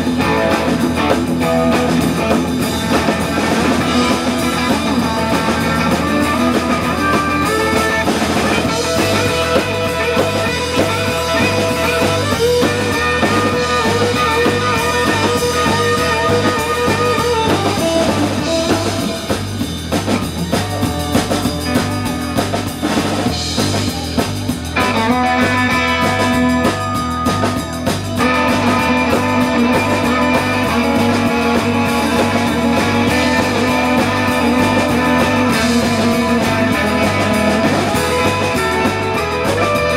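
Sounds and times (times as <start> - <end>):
bass guitar: 0.0 - 39.9
drum kit: 0.0 - 39.9
electric guitar bending notes: 0.0 - 39.9.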